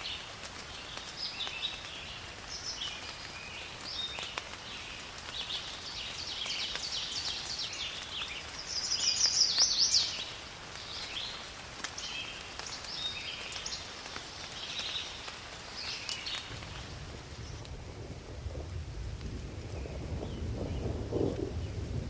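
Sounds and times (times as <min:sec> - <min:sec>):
songbirds chirping: 0:00.0 - 0:18.0, 0:18.6 - 0:22.0
faint clicks: 0:02.8 - 0:08.6, 0:10.7 - 0:16.9.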